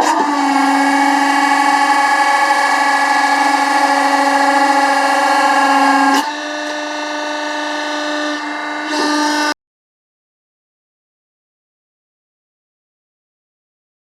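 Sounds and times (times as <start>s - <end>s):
log splitter humming: 0.0s - 9.5s.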